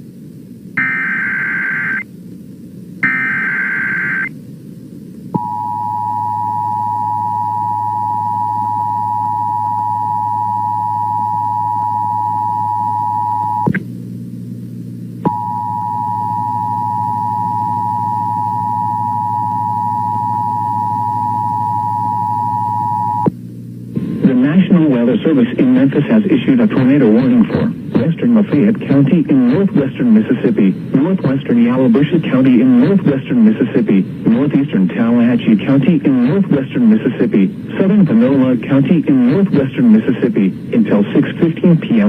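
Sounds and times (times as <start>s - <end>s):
low hum: 0.0s - 42.0s
two-tone attention signal: 0.8s - 2.0s, 3.0s - 4.3s, 5.4s - 13.6s
warbling data tones: 0.8s - 2.1s, 3.0s - 4.3s.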